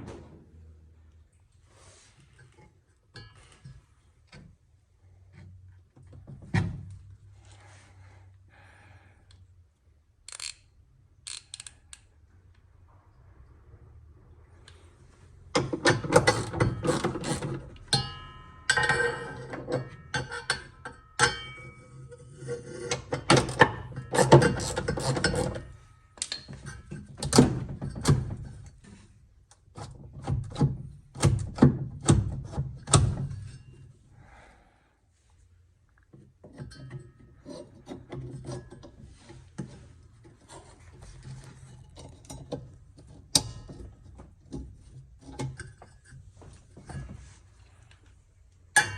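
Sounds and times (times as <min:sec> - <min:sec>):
clicks of parts: 0:10.2 - 0:12.6.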